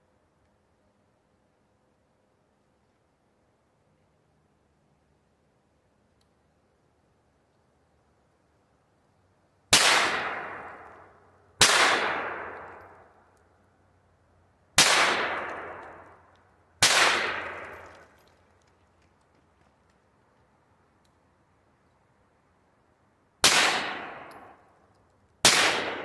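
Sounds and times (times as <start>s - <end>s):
gunshots ringing out: 9.7s - 13.0s, 14.8s - 16.1s, 16.8s - 18.1s, 23.4s - 24.6s, 25.4s - 26.0s.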